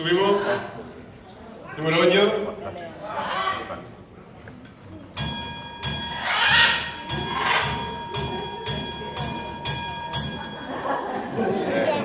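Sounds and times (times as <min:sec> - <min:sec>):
bell ringing: 0:05.2 - 0:11.6.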